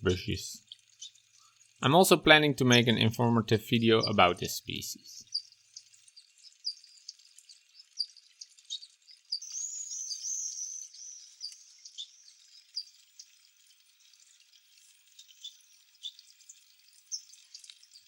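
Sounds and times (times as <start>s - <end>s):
bird warbling song: 3.8s - 14.2s, 15.1s - 18.0s
finches chirping: 5.0s - 13.5s, 15.1s - 18.0s.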